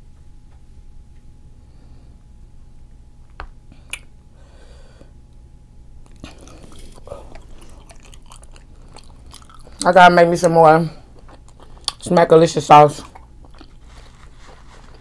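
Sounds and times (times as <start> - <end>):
person chewing: 3.8 - 4.1, 6.0 - 15.0
wet smacking and crackling: 6.0 - 15.0.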